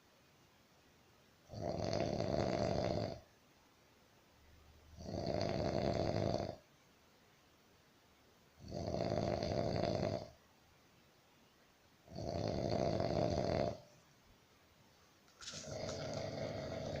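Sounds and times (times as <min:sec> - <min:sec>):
person snoring: 0:01.5 - 0:03.2, 0:05.0 - 0:06.6, 0:08.6 - 0:10.4, 0:12.1 - 0:13.8, 0:15.5 - 0:17.0.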